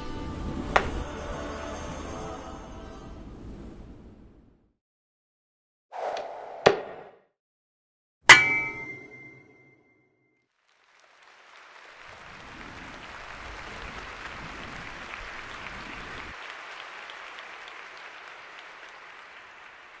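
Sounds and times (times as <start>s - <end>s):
applause-like crackle: 10.5s - 20.0s.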